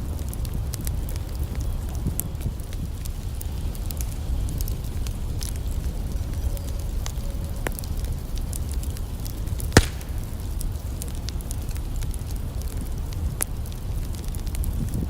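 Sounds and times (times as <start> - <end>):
campfire crackling and popping: 0.0 - 15.0
sharp snap of fire: 9.2 - 12.7.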